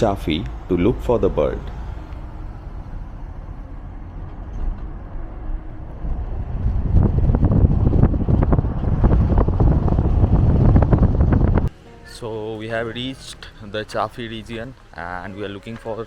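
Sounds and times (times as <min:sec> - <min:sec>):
car engine rumble: 0:00.0 - 0:12.1
wind noise: 0:01.2 - 0:11.7
car rattling on bumpy road: 0:02.4 - 0:11.7.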